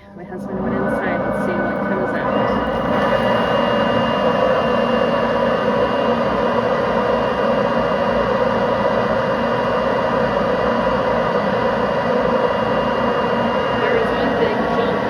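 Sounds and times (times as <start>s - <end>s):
leaf blower rushing air: 0.7s - 15.0s.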